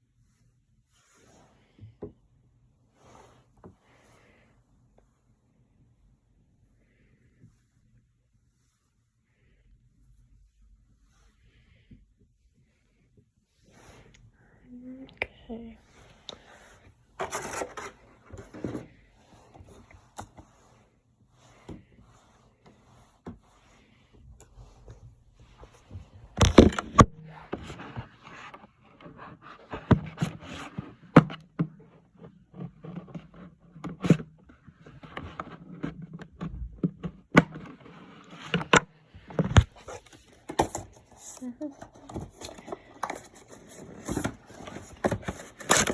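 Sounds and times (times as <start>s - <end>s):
scraping and rubbing of packaging: 17.1s - 20.9s, 39.6s - 45.9s.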